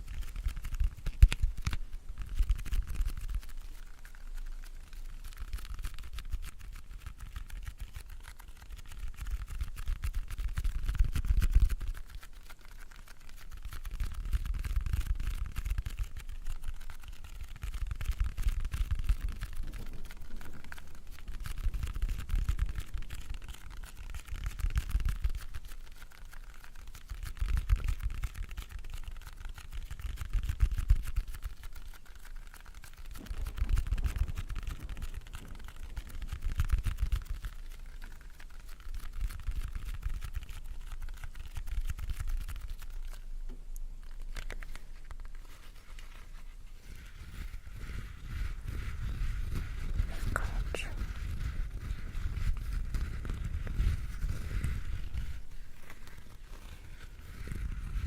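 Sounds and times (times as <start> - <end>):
fine scratchy rustle: 0.0 - 58.0
soft breaths on microphone: 10.4 - 27.8, 43.5 - 58.0.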